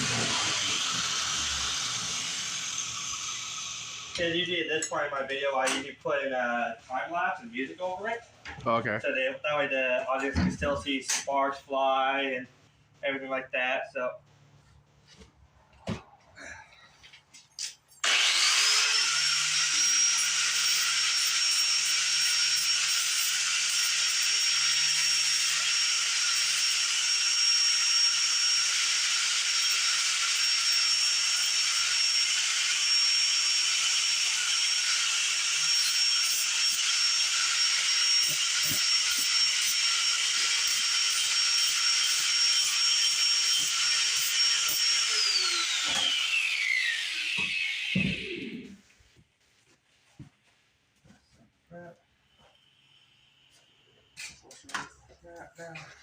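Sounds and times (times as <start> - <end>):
grinder cutting metal: 0.0 - 5.0, 17.6 - 48.7.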